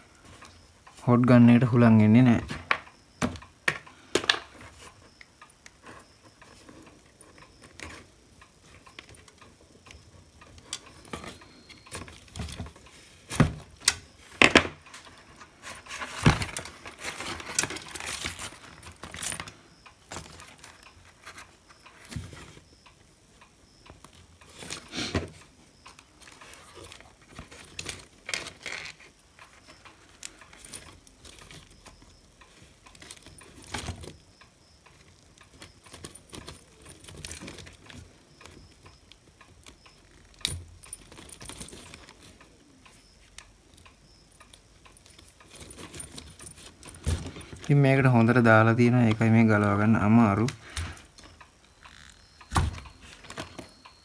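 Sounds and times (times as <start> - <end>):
scraping and rustling: 10.4 - 22.6.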